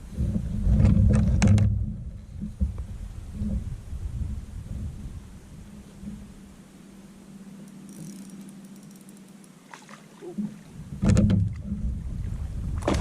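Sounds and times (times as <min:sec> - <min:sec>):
loud hollow thump: 0:11.0 - 0:11.6, 0:12.8 - 0:13.0.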